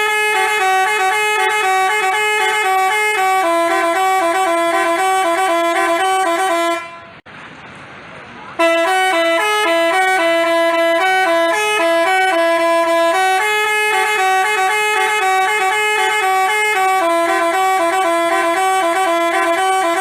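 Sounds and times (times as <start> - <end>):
two-tone horn melody: 0.0 - 7.2, 8.6 - 20.0.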